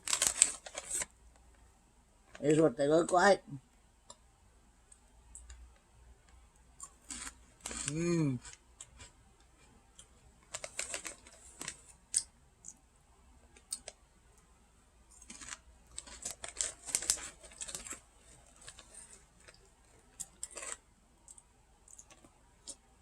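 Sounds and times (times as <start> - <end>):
crunching potato sticks: 0.0 - 1.1, 6.7 - 12.8, 15.0 - 22.9.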